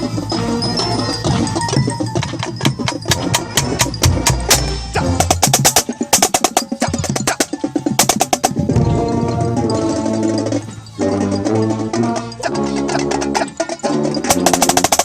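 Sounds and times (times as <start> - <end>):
marching snare drum: 1.3 - 8.9, 14.2 - 15.0.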